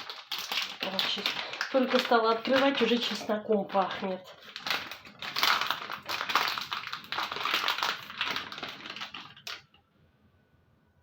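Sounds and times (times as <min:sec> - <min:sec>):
plastic packet crinkling: 0:00.0 - 0:09.8.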